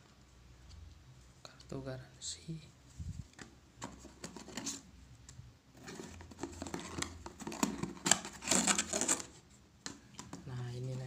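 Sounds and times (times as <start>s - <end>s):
cardboard rustling and crinkling: 3.0s - 4.9s, 5.7s - 9.4s.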